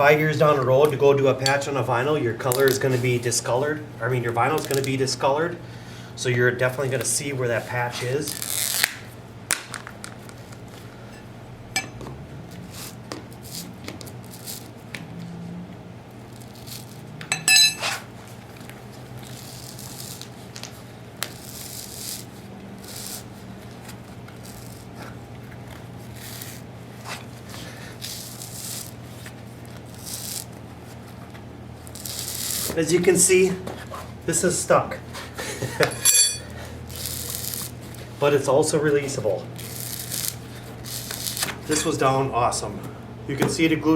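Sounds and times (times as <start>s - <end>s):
steady low hum: 0.0s - 43.9s
sharp metallic clink: 17.3s - 18.0s, 35.9s - 36.5s
hand tools scraping floor tile: 24.3s - 25.2s.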